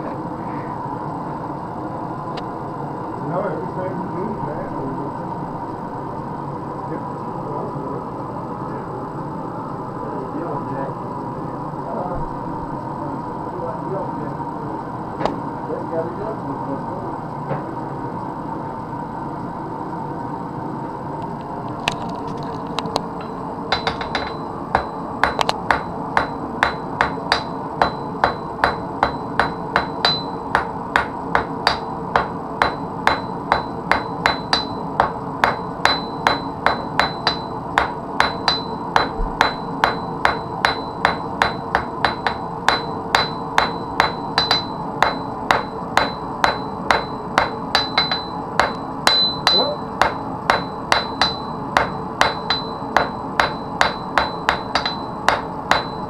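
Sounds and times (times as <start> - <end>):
steady background noise: 0.0 - 56.0
hammer striking metal on anvil: 23.2 - 56.0.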